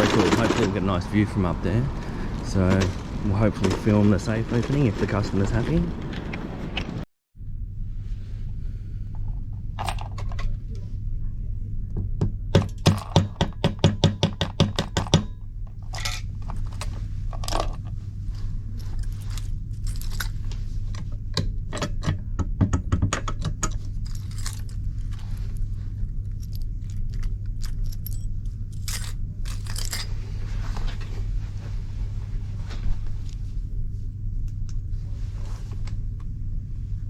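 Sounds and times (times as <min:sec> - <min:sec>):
steady low hum: 0:00.0 - 0:37.0
keys jangling and scraping: 0:09.7 - 0:10.5, 0:14.9 - 0:21.1, 0:23.6 - 0:30.3.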